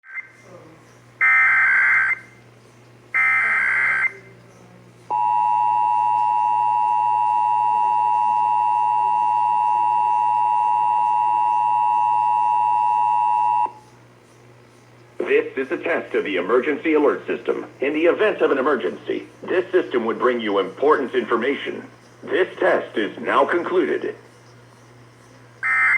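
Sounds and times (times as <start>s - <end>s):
two-tone attention signal: 3.2s - 4.2s, 5.1s - 13.8s.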